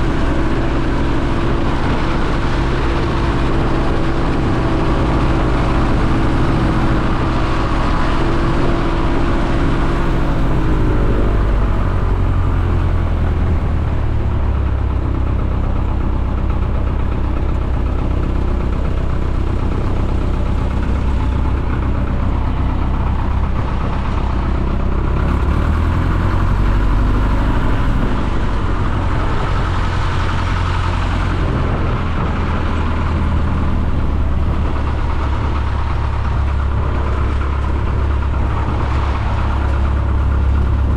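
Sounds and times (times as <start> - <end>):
light aircraft engine droning: 0.0 - 40.9.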